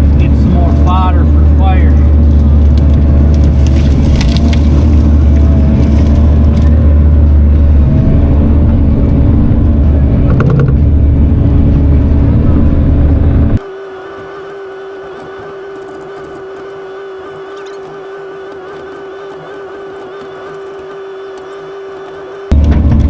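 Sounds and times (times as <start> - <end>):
diesel engine running: 0.0 - 23.0.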